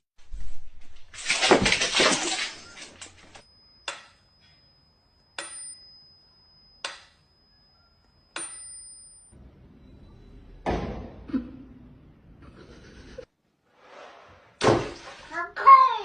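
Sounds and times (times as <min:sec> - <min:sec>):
thin high ringing tone: 0:02.3 - 0:10.6.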